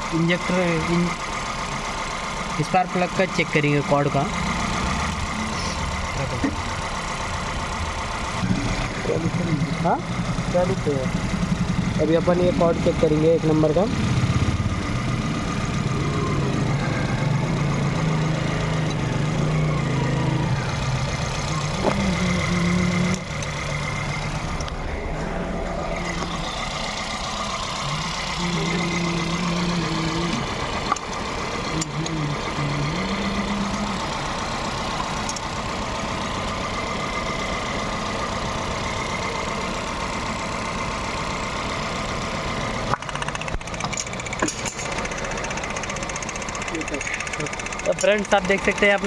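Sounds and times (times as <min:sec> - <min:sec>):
car engine idling unevenly: 0:00.0 - 0:49.0
low hum: 0:14.1 - 0:34.4
sharp clicks: 0:35.0 - 0:35.5, 0:42.9 - 0:49.0.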